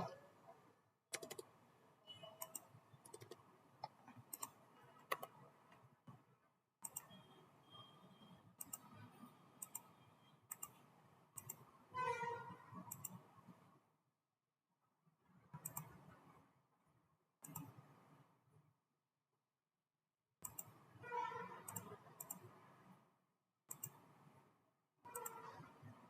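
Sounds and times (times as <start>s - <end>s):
mouse and keyboard clicks: 1.1s - 1.5s, 2.4s - 5.4s, 6.8s - 7.2s, 8.6s - 8.9s, 9.6s - 9.9s, 10.5s - 10.8s, 11.4s - 11.6s, 12.9s - 13.2s, 15.6s - 16.0s, 17.4s - 17.8s, 20.4s - 20.8s, 21.7s - 22.5s, 23.7s - 24.1s.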